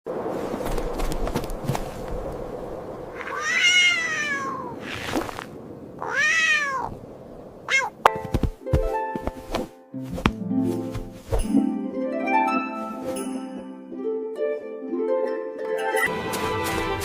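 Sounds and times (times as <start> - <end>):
cat meowing: 3.1 - 5.1, 6.0 - 7.0, 7.7 - 8.0.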